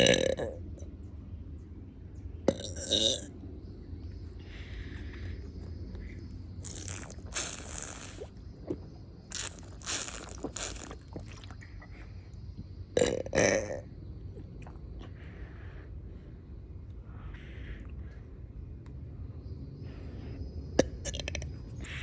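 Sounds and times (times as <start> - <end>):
person burping: 0.0 - 0.6, 2.5 - 3.3, 13.0 - 13.8
breathy hissing noises: 4.4 - 8.5, 9.3 - 12.3.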